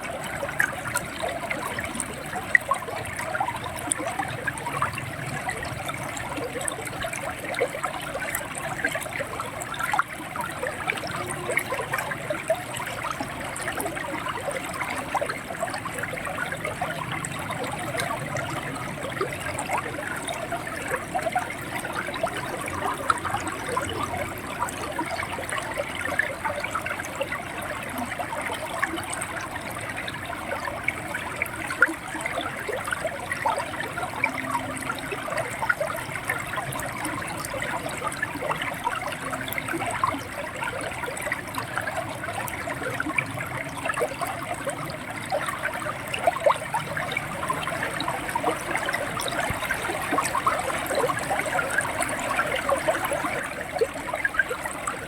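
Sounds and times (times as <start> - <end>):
river water babbling: 0.0 - 55.0.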